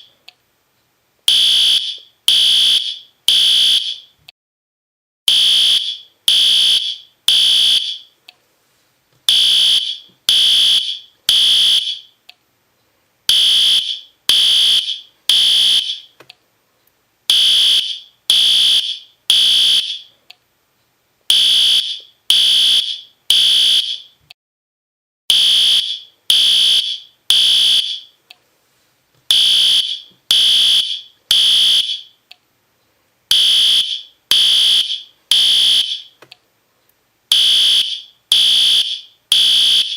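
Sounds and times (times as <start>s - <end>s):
fire alarm horn beeping: 1.3s - 4.1s, 5.3s - 8.1s, 9.3s - 12.1s, 13.3s - 16.1s, 17.3s - 20.1s, 21.3s - 24.2s, 25.3s - 28.2s, 29.3s - 32.2s, 33.3s - 36.2s, 37.3s - 39.9s.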